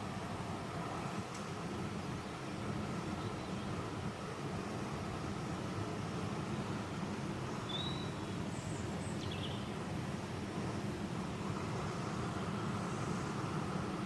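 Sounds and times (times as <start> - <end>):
small bird chirping: 7.5 - 9.7.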